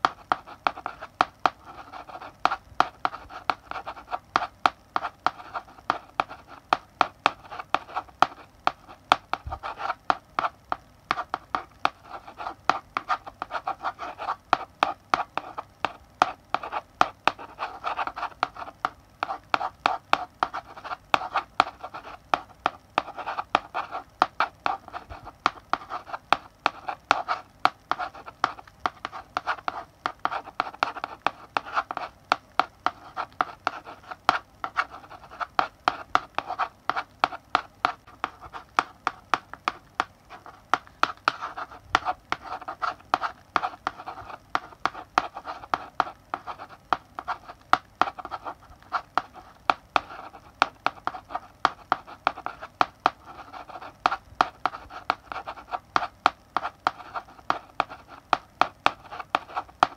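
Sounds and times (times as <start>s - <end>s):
chalk writing on a blackboard: 0.0s - 59.9s.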